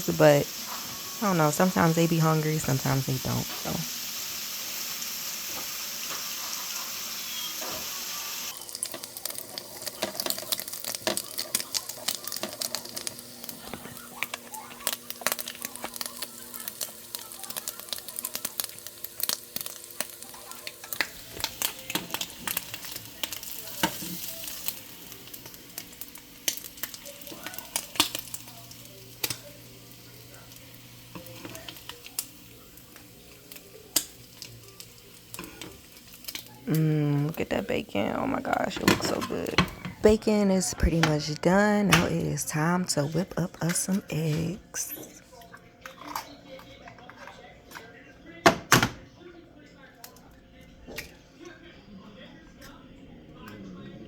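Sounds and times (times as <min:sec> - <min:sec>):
bacon sizzling in a skillet: 0:00.0 - 0:41.4
crackles and pops: 0:08.5 - 0:36.8.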